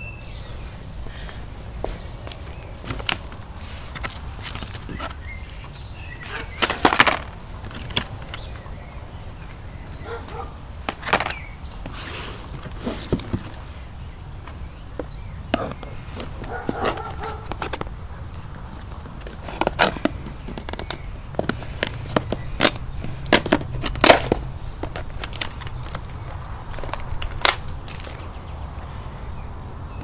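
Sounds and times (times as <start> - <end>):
packaging clicks and knocks: 6.2 - 8.5, 18.8 - 28.3.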